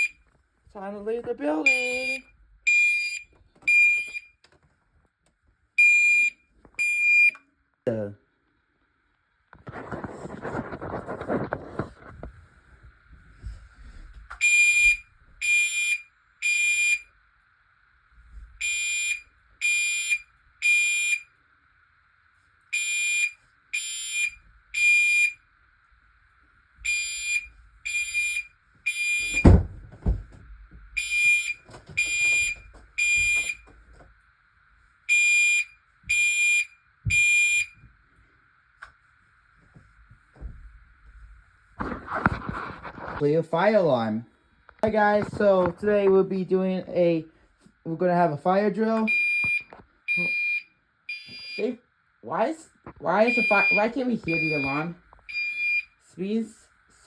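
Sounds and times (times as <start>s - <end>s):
faint steady tone: 0.0s - 0.9s, 1.5s - 4.5s, 12.7s - 42.3s, 53.0s - 57.0s
fire alarm horn blasts: 1.6s - 4.3s, 5.8s - 7.4s, 14.4s - 17.1s, 18.6s - 21.3s, 22.7s - 25.4s, 26.8s - 29.6s, 31.0s - 33.6s, 35.1s - 37.8s, 49.0s - 51.8s, 53.2s - 55.8s
thump: 29.3s - 30.8s.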